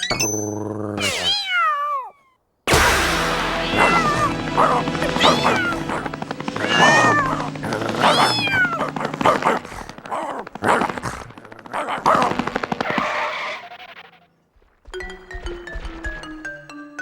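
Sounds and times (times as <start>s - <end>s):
cartoon cats yowling and screeching: 1.0s - 2.4s, 3.6s - 10.5s.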